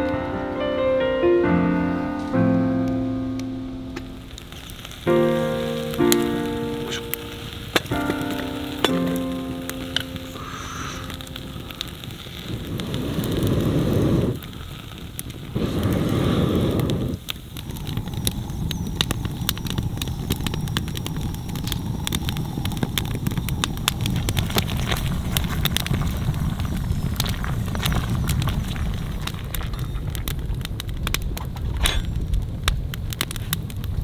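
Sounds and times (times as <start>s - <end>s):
rushes of low noise: 0.0s - 14.5s
campfire crackling and popping: 0.0s - 34.0s.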